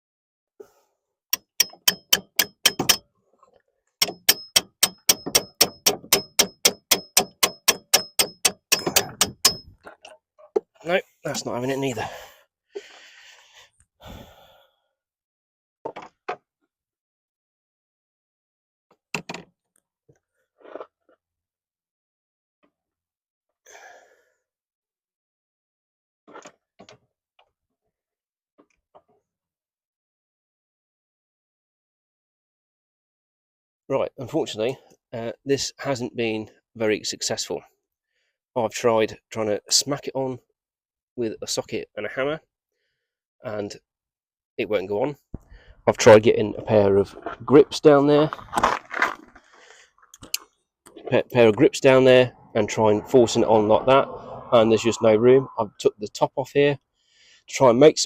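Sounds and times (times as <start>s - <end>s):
hammer ringing on metal socket: 1.4s - 3.0s, 4.0s - 9.8s.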